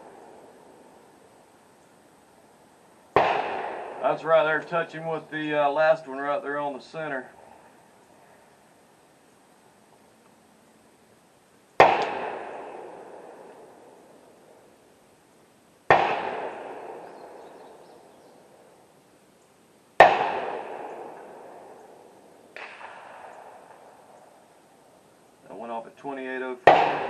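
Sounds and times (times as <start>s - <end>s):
rifle shots echoing: 0.0s - 1.3s, 3.1s - 5.9s, 11.8s - 14.7s, 15.9s - 18.8s, 20.0s - 24.6s, 26.6s - 27.0s.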